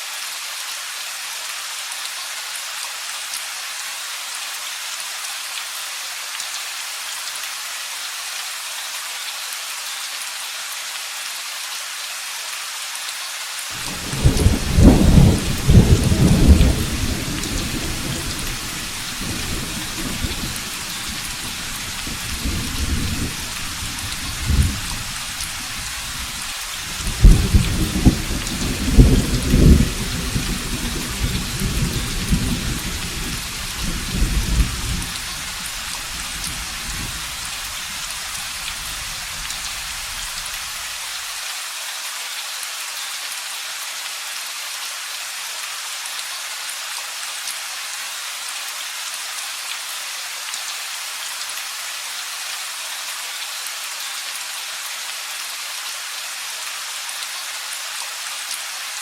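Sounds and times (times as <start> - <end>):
heavy rain: 0.0 - 59.0
rolling thunder: 13.8 - 37.4.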